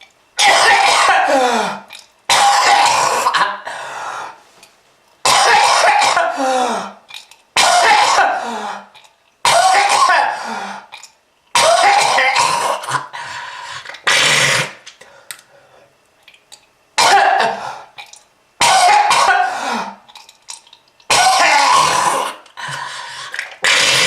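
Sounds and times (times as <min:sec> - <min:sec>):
person coughing harshly: 0:00.4 - 0:03.6, 0:05.2 - 0:07.0, 0:07.6 - 0:10.7, 0:11.6 - 0:13.1, 0:14.0 - 0:14.8, 0:17.0 - 0:17.8, 0:18.6 - 0:20.0, 0:21.1 - 0:22.4.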